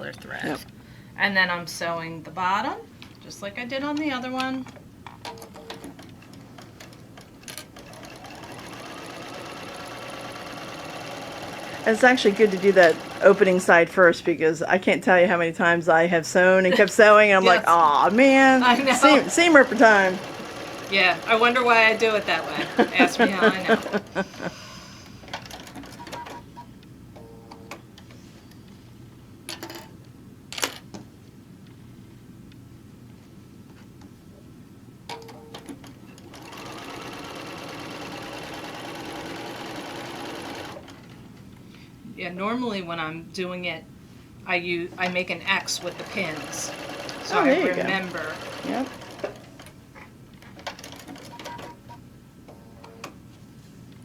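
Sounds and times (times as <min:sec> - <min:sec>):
sewing machine motor running: 0:05.9 - 0:13.7, 0:17.5 - 0:24.4, 0:36.2 - 0:41.2, 0:45.6 - 0:49.8.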